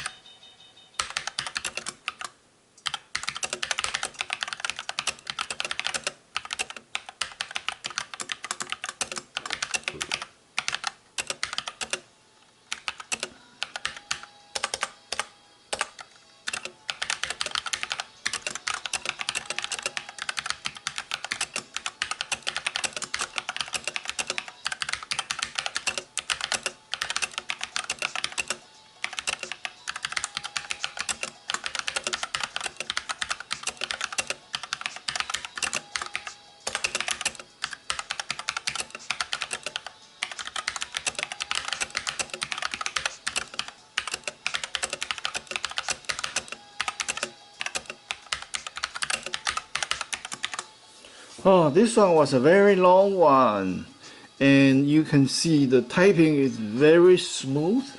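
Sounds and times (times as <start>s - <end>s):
mechanical keyboard key clacks: 12.8s - 50.6s.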